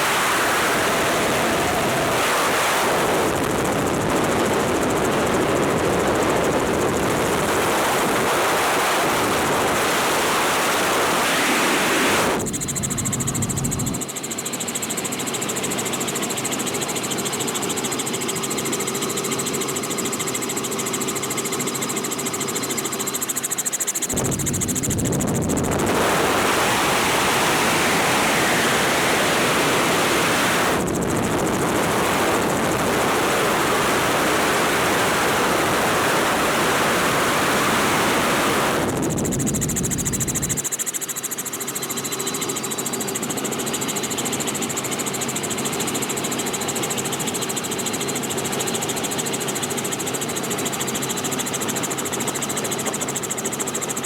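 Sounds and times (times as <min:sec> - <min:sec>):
wind rushing over microphone: 0:00.0 - 0:14.0, 0:24.1 - 0:40.6
helicopter rotor and engine noise: 0:00.0 - 0:54.0.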